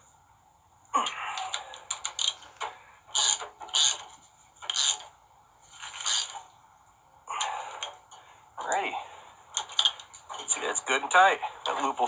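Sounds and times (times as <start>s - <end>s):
hand tool tightening nuts: 1.5s - 2.5s, 3.1s - 5.1s, 5.8s - 6.5s.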